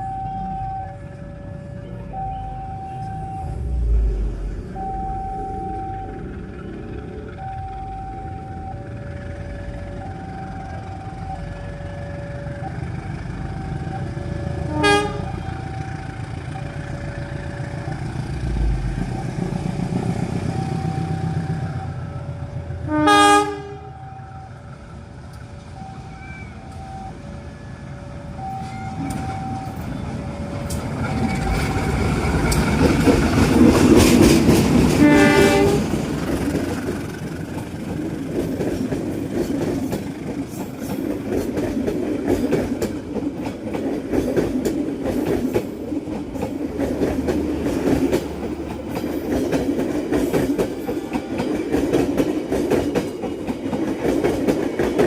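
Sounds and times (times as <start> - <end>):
two-note crossing warning signal: 0.0 - 22.3, 25.4 - 32.0
train cars clickety-clack rumble: 0.0 - 55.0
train horn blasts: 14.4 - 16.0, 22.8 - 24.6, 34.9 - 36.0.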